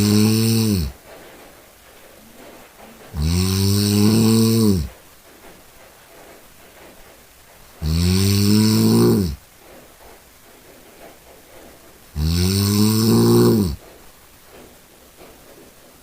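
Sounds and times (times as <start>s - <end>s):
cat snoring: 0.0s - 1.0s, 3.1s - 5.0s, 7.8s - 9.4s, 12.1s - 13.8s.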